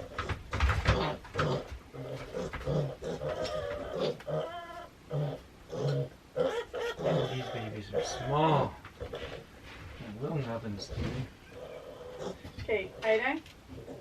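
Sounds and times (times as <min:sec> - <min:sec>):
piglet grunting: 0:00.0 - 0:09.5, 0:10.9 - 0:14.0
piglet squealing: 0:02.7 - 0:09.4, 0:11.4 - 0:12.4.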